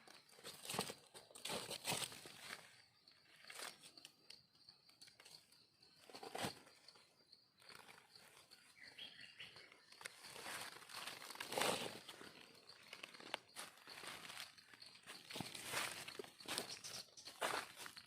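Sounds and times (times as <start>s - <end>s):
footsteps in dry leaves: 10.1s - 18.0s.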